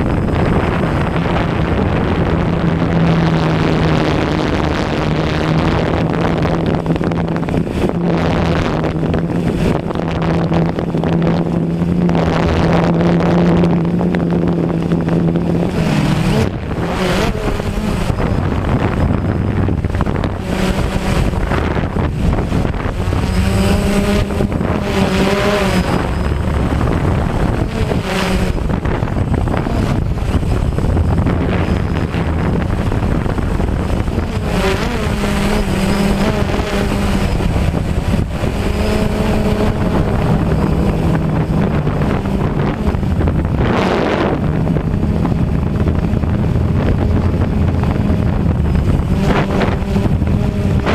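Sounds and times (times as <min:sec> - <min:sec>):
drone propellers humming: 0:00.0 - 0:50.9
wind buffeting microphone: 0:00.0 - 0:50.9.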